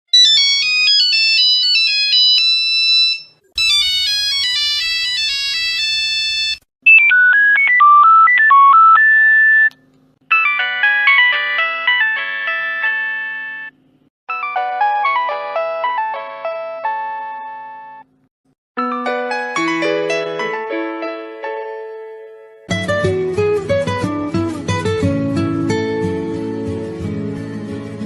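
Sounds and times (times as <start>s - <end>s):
mobile phone ringtones: 0.2s - 9.7s, 10.3s - 15.3s.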